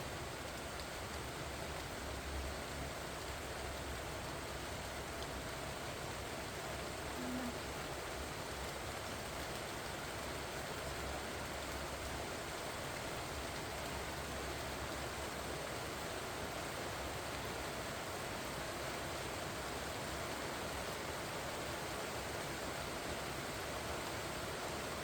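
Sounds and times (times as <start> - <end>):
rain pattering on leaves: 0.0 - 25.0
brief low tone: 7.1 - 7.7.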